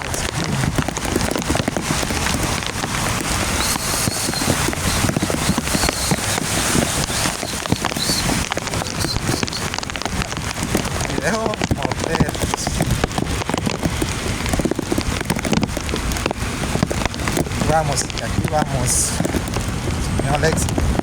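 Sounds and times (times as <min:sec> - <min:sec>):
heavy rain falling: 0:00.0 - 0:21.0
raindrops hitting hard surfaces: 0:00.0 - 0:21.0.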